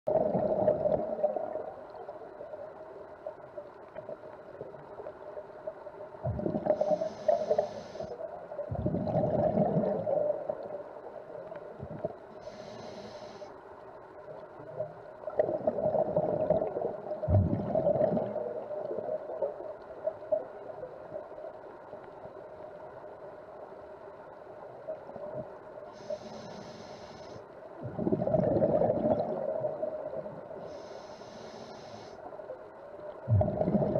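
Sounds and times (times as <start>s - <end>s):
underwater drone: 0.1s - 33.9s
bursts of hiss: 6.7s - 8.2s.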